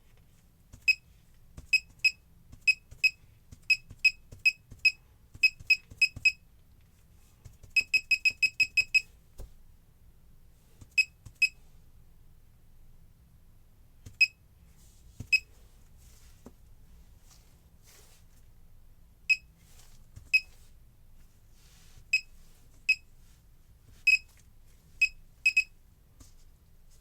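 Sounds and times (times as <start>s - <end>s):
short high key-press beeps: 0.8s - 1.0s, 1.7s - 6.4s, 7.8s - 9.1s, 10.9s - 11.6s, 14.1s - 14.4s, 15.3s - 15.5s, 19.3s - 19.5s, 24.1s - 24.3s, 25.0s - 25.7s.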